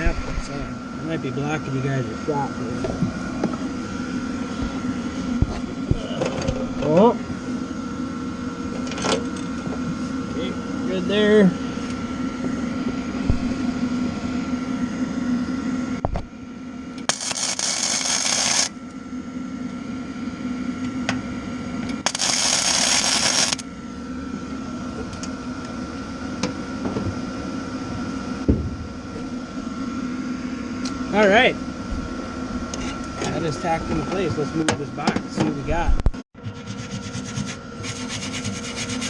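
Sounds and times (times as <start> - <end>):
steady hum: 0.0 - 39.0
welding arc crackling hiss: 17.1 - 18.7, 22.0 - 23.6.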